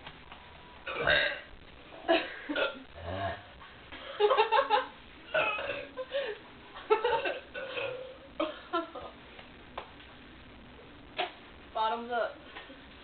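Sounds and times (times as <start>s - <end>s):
women belching: 0.9s - 1.5s, 2.6s - 3.5s, 5.3s - 6.0s, 7.2s - 8.5s
women giggling and laughing: 4.1s - 5.0s.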